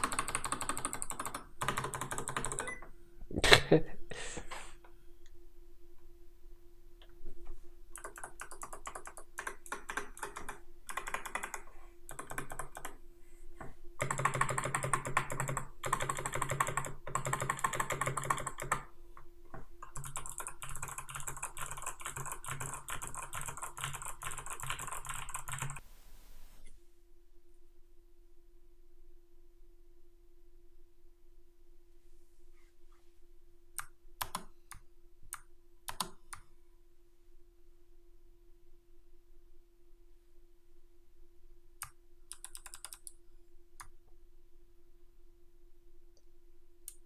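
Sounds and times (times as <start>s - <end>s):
clicky mechanical keyboard typing: 0.0s - 2.8s, 8.0s - 13.0s, 14.0s - 18.9s, 19.8s - 25.9s, 35.3s - 36.4s, 41.8s - 43.2s.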